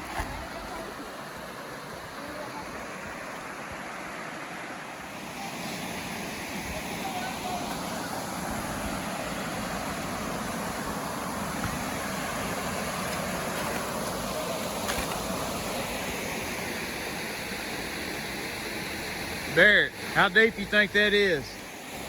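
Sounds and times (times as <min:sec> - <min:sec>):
waterfall and creek rushing: 0:00.0 - 0:22.0.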